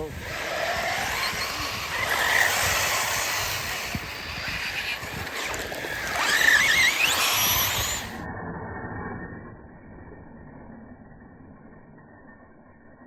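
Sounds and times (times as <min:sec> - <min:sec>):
radio-controlled cars hissing: 0:00.0 - 0:08.3
motor whine climbing in pitch: 0:00.0 - 0:13.0.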